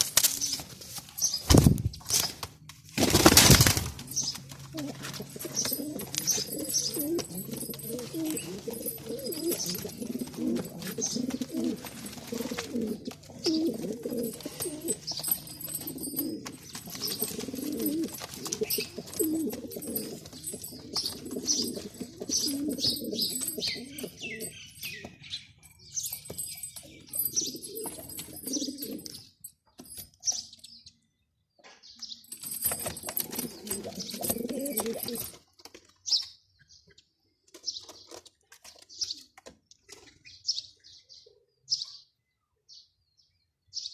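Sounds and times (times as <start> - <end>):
pigeon cooing: 4.7 - 24.6, 27.1 - 29.2, 33.1 - 35.4.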